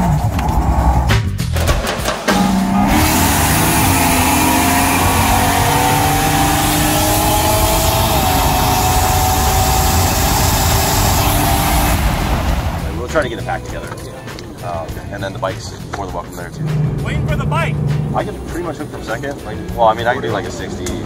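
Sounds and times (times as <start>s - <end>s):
car engine accelerating hard: 2.4s - 13.1s, 16.5s - 18.4s
wind and road noise: 2.8s - 21.0s.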